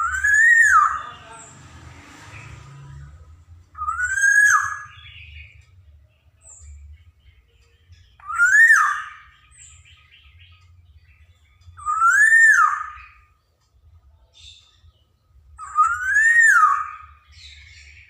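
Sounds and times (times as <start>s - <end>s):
bird whistled call: 0.0s - 1.2s, 3.7s - 5.6s, 8.2s - 10.5s, 11.8s - 13.3s, 15.6s - 18.0s.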